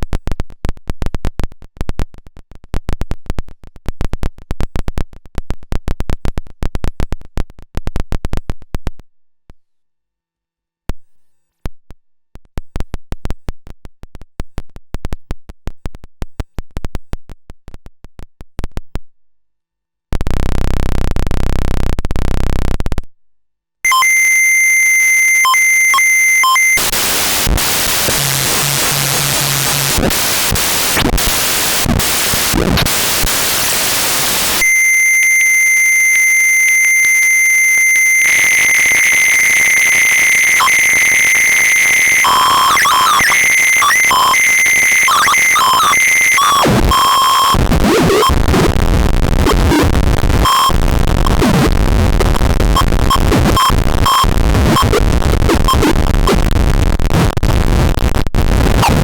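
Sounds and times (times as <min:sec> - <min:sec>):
piercing high electronic tone: 0:23.9 - 0:48.4, 0:49.5 - 0:51.7
low electronic buzz: 0:23.9 - 0:55.8.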